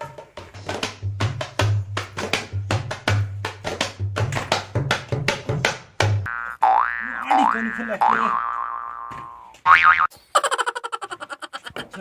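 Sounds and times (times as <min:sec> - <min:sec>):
springy boing: 0:06.3 - 0:10.1.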